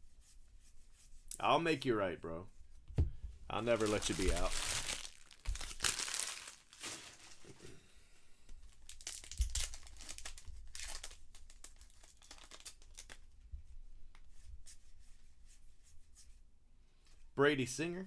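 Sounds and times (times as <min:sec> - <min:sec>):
card pack wrappers crinkling: 0:03.6 - 0:07.6, 0:08.7 - 0:13.3.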